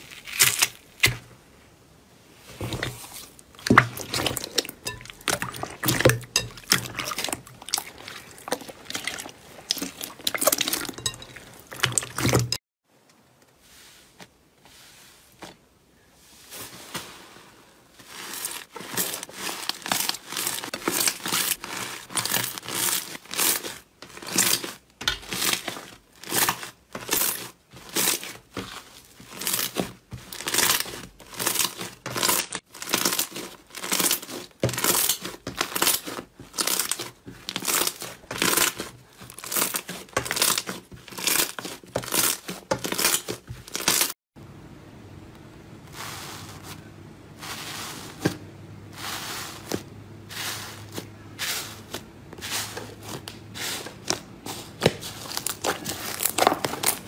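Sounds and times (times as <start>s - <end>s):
slime crackling and popping: 0.0s - 1.2s, 18.3s - 44.1s.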